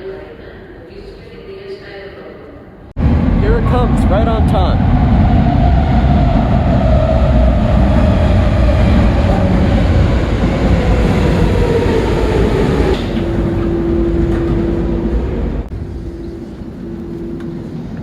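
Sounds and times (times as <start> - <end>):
steady tone: 3.0 - 9.5
electric train rumble: 3.0 - 18.0.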